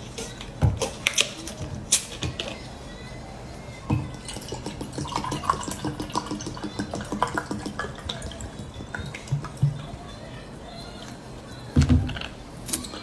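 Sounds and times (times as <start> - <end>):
person gulping juice: 4.2 - 10.0.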